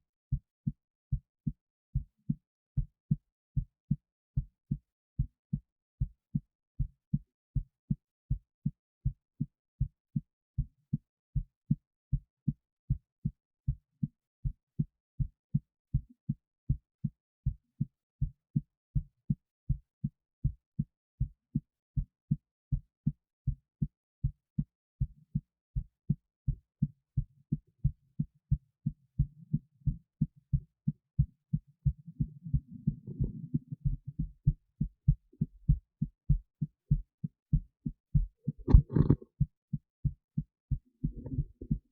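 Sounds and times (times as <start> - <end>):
heartbeat thumps: 27.2 - 41.9.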